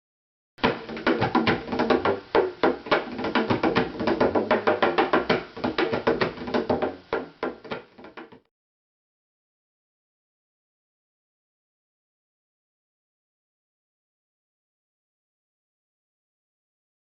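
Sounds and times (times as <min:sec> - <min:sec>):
fast sharp knocks: 0:00.6 - 0:08.5.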